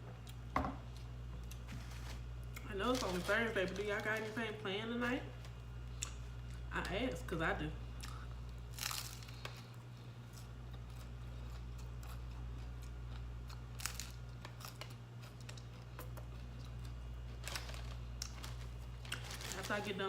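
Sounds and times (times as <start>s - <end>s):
steady low hum: 0.0s - 20.0s
food crunching: 7.9s - 19.8s.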